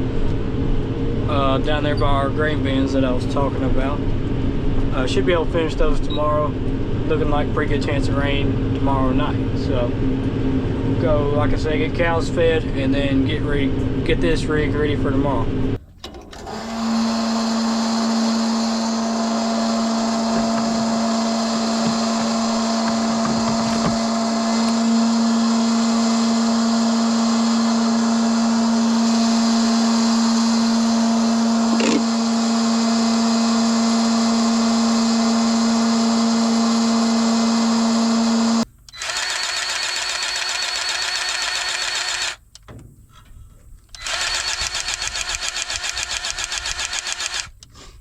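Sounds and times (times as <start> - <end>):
tractor and forage chopper whine: 0.0 - 48.0
steady machine sound: 16.4 - 42.4, 43.9 - 47.6.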